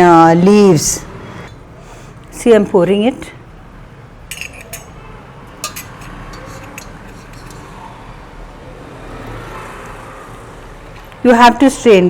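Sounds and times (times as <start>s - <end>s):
pots clinking: 4.2s - 8.1s.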